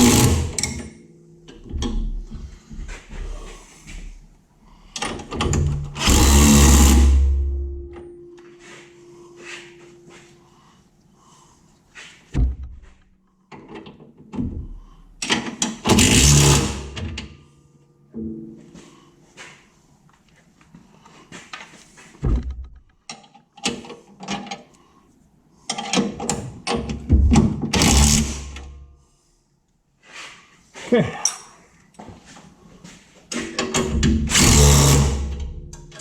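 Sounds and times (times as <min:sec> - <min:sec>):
tools clanking on metal: 0:00.0 - 0:04.2, 0:04.9 - 0:10.4, 0:25.7 - 0:28.7, 0:33.3 - 0:36.0.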